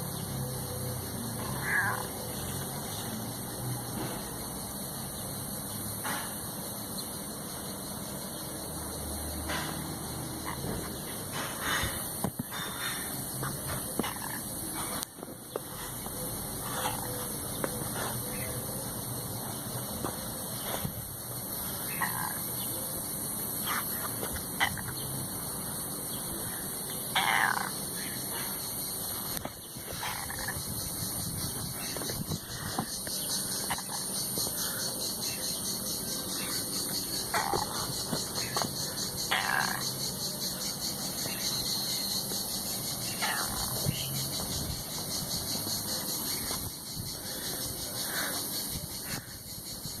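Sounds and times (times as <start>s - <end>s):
cat calling: 1.4s - 2.2s, 27.1s - 27.7s.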